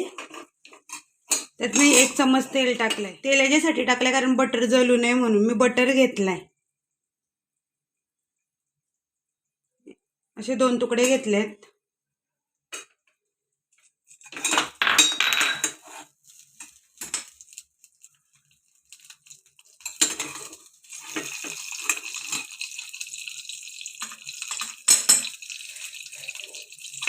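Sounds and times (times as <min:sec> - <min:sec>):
metal utensil clinking on pot: 0:14.2 - 0:15.8, 0:19.6 - 0:22.9, 0:24.0 - 0:27.0
butter sizzling in hot oil: 0:15.8 - 0:27.0.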